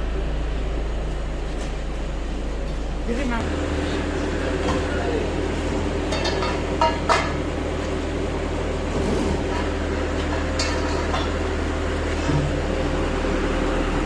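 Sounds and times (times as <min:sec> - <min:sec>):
truck engine running: 0:00.0 - 0:14.0
metallic clanks: 0:06.0 - 0:07.5, 0:09.4 - 0:11.5.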